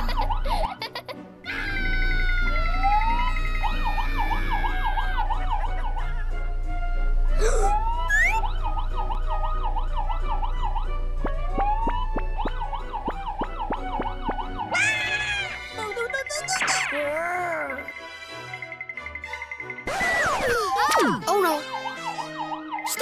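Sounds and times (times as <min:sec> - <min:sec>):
background music: 0:00.0 - 0:23.0
cartoon police siren: 0:01.5 - 0:17.9, 0:19.8 - 0:23.0
rising whistle-like glides: 0:08.0 - 0:11.0.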